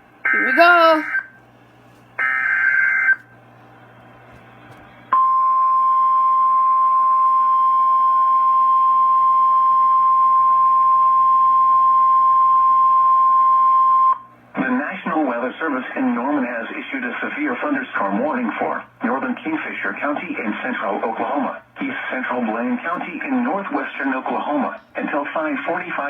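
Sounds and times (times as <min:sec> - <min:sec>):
steady warning alarm tone: 0:00.3 - 0:01.4, 0:02.2 - 0:03.3.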